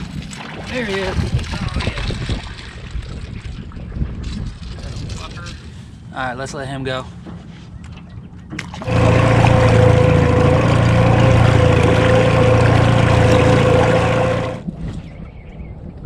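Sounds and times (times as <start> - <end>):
outboard boat motor running: 8.0 - 14.7.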